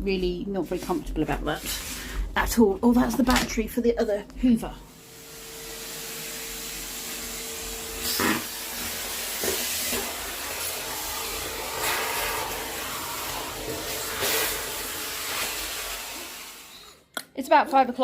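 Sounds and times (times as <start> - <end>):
vacuum cleaner running: 4.4 - 17.0.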